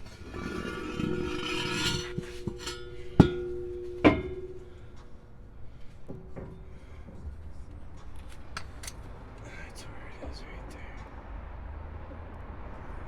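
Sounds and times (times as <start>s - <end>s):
metal scraping on steel: 0.0s - 5.2s
metal clanks ringing: 0.0s - 5.4s.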